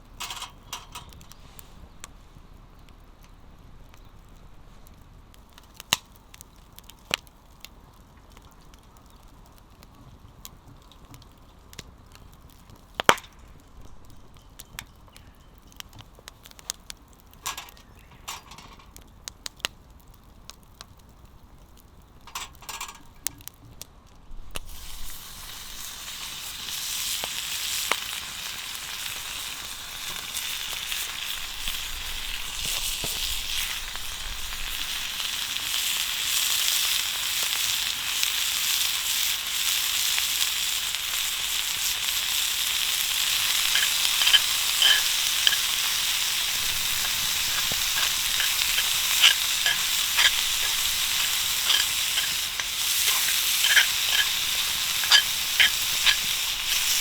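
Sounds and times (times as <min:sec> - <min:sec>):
food sizzling in a frying pan: 0:22.2 - 0:23.2, 0:24.6 - 0:57.0
stirring ticks and taps: 0:22.2 - 0:23.3, 0:41.7 - 0:57.0.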